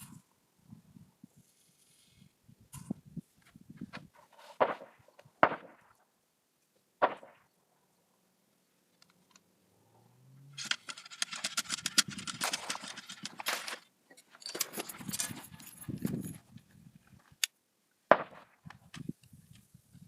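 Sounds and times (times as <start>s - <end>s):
metallic rattling and clattering: 10.6s - 16.5s.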